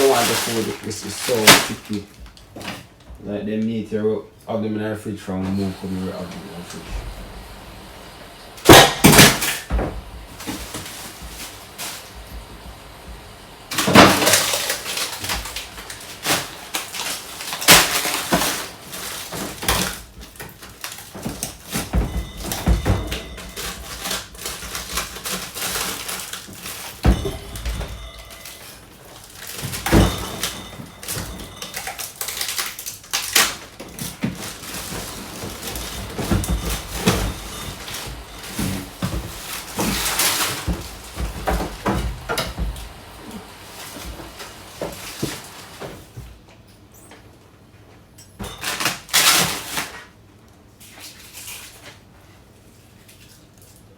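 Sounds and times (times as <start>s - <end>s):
food containers knocking: 6.4s - 16.0s, 33.8s - 46.2s.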